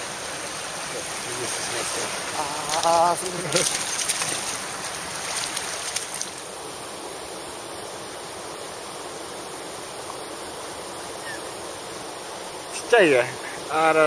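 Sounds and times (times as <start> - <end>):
stream water running: 0.0 - 14.0.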